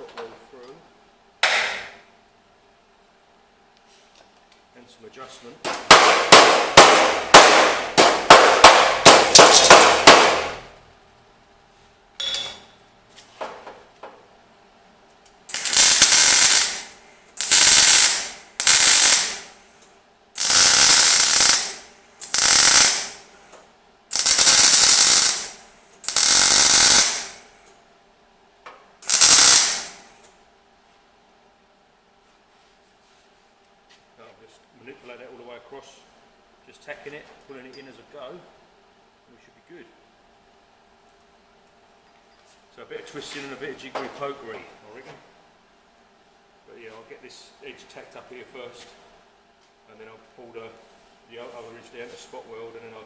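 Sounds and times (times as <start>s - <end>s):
hammer blows on sheet steel: 5.7s - 10.7s
welder tack welding: 5.7s - 10.7s, 15.5s - 19.6s, 20.4s - 23.3s, 24.1s - 27.4s, 29.0s - 30.1s.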